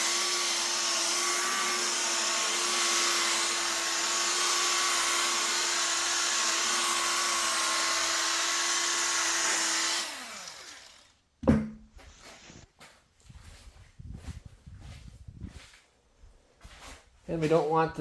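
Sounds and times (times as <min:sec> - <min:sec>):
rotary buffer motor whine: 0:00.0 - 0:11.1.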